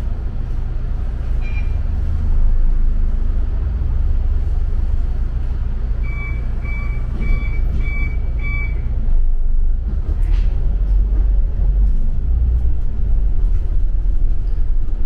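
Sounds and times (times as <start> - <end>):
bus engine and road rumble: 0.0 - 15.0
short high beeps: 6.1 - 8.9.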